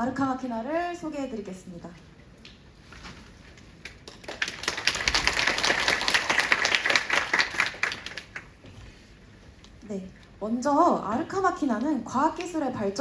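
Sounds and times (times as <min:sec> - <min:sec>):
audience applauding: 0:04.0 - 0:08.5.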